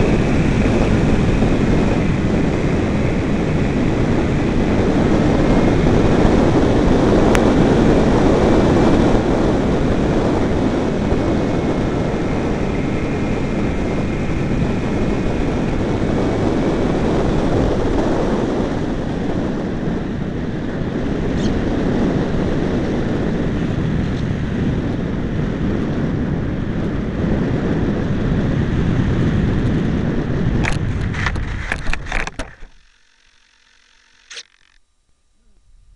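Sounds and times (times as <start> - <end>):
wind buffeting microphone: 0.0 - 32.7
electric motor whine: 30.6 - 35.9
sharp clicks: 30.7 - 34.8.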